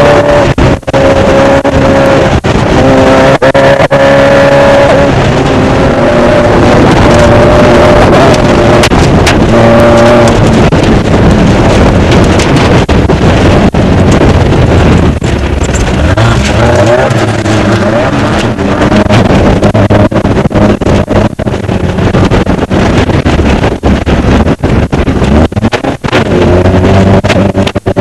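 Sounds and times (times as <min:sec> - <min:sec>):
race car engine running hard: 0:00.0 - 0:28.0
chassis knocks and rattles: 0:06.8 - 0:28.0.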